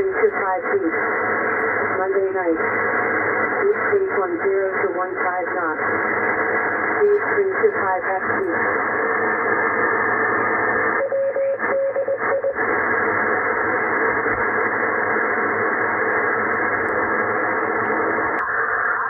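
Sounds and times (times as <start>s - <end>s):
radio receiver hiss and static: 0.0s - 19.0s
radio whistle: 10.8s - 12.8s.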